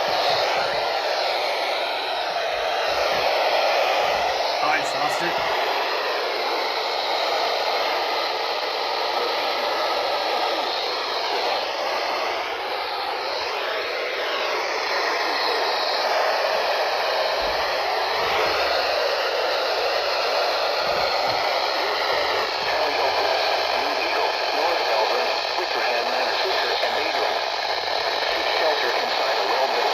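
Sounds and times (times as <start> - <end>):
radio static hiss: 0.0 - 19.0, 19.6 - 29.9.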